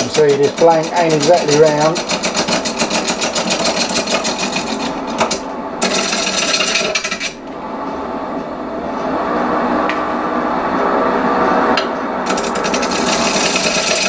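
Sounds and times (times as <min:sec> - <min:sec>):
lathe tool knocking wood: 0:00.0 - 0:07.3, 0:12.3 - 0:14.0
wood lathe running: 0:00.0 - 0:07.4, 0:12.3 - 0:14.0.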